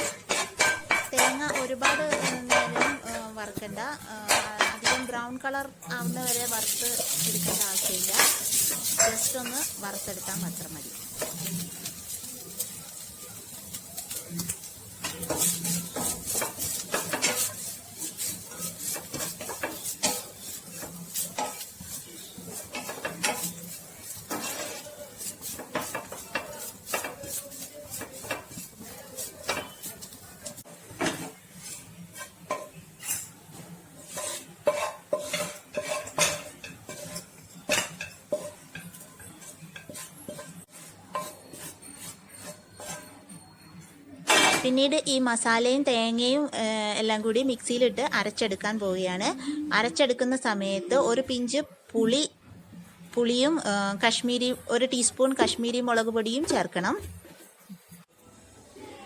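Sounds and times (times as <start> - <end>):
metal spoon scraping a pan: 0.0 - 5.2, 5.8 - 44.7
light sizzle: 0.0 - 59.0.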